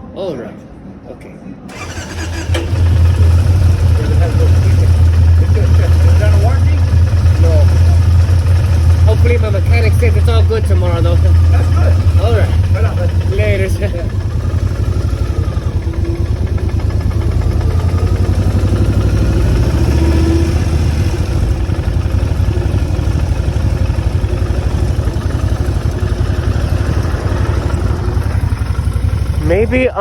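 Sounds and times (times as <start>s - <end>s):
motorcycle engine idling: 1.7s - 30.0s.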